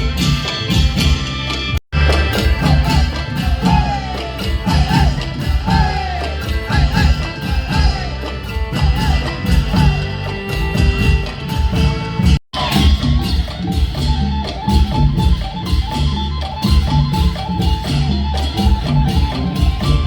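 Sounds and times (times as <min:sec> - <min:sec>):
low drum pulse: 0:02.0 - 0:14.2.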